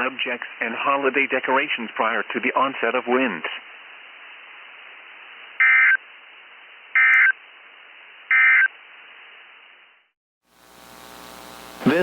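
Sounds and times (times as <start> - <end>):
radio hiss: 0.0 - 12.0
buzzy digital data tones: 10.6 - 12.0.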